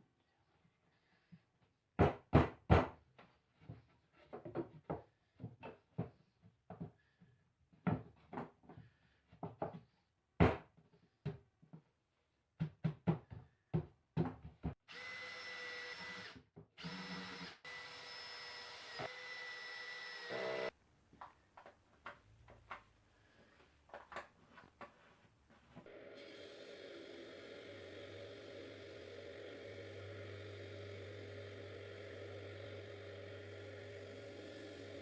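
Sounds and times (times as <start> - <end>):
knocks and clatter of wood and tools: 2.0 - 7.0, 7.8 - 11.9, 12.6 - 14.8, 23.5 - 25.9
power drill whining: 14.9 - 20.8, 25.8 - 35.0.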